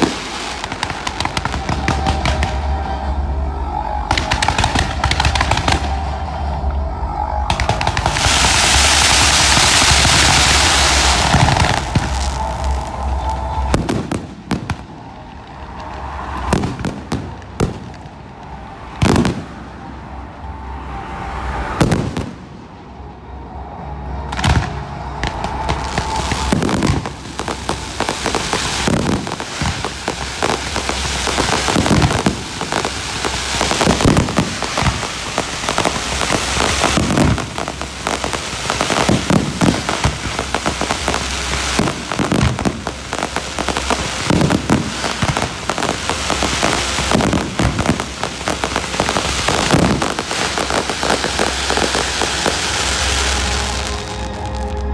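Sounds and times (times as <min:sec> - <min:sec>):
loud firework bangs: 0:00.0 - 0:03.2, 0:04.1 - 0:06.6, 0:07.5 - 0:18.3, 0:19.0 - 0:19.6, 0:24.3 - 0:54.2
firework crackle: 0:00.0 - 0:20.0, 0:21.8 - 0:23.1, 0:24.2 - 0:54.9.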